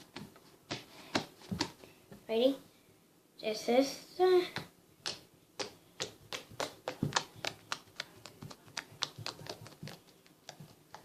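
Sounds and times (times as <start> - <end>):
fingers tapping slime: 5.0 - 11.0.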